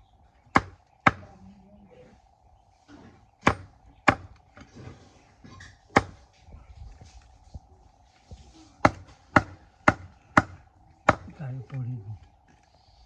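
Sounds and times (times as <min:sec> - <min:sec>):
bamboo chopping blows: 0:08.8 - 0:11.3.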